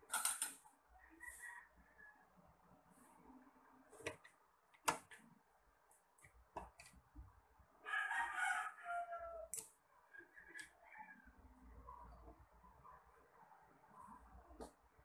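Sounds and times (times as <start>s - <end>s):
rooster crowing: 1.0s - 2.2s, 7.8s - 9.5s, 10.2s - 11.4s.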